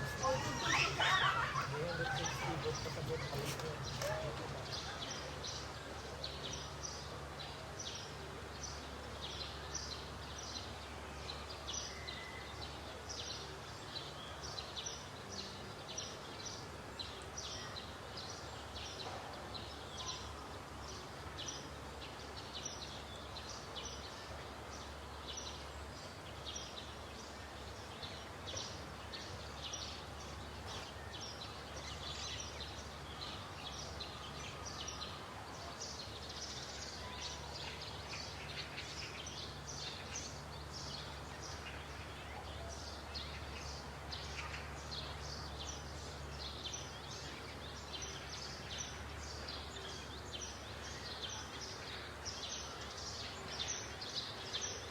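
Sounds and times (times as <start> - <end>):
small birds chirping: 0.0 - 7.1, 24.8 - 54.9
low background hum: 0.0 - 18.9.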